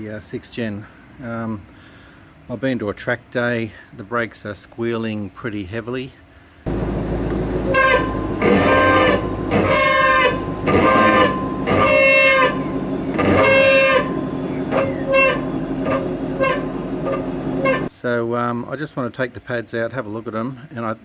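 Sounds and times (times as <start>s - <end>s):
brakes squealing: 6.7s - 17.9s.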